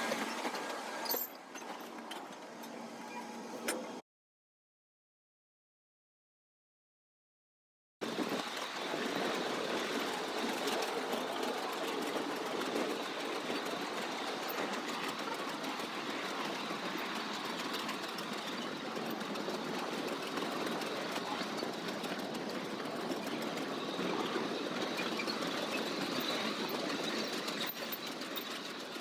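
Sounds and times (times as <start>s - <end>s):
vehicle rattling in motion: 8.0s - 29.0s.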